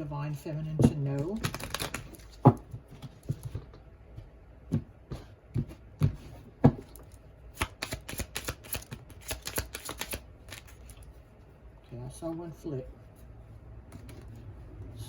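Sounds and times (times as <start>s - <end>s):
rapid card clicks: 1.2s - 2.4s, 7.6s - 11.0s
cards being shuffled: 1.2s - 3.7s, 7.0s - 11.2s.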